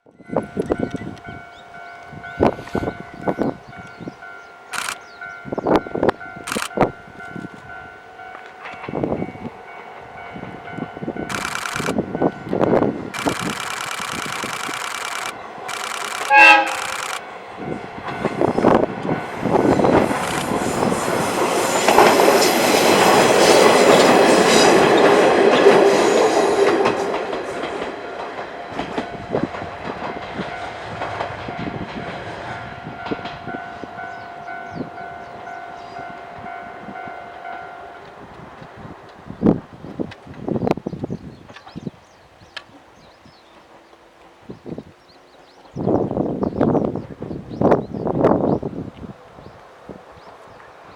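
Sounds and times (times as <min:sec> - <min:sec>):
railcar passing on rails: 0:00.0 - 0:50.9
train horn blast: 0:16.2 - 0:16.9.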